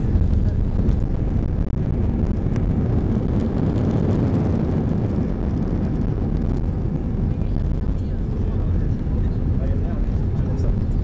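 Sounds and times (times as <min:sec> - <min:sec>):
airplane cabin rumble: 0:00.0 - 0:11.0.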